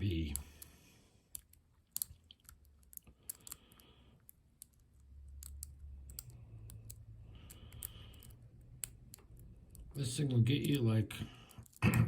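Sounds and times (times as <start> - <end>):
lock pick clicking in a lock: 1.3 - 3.7, 4.6 - 10.0.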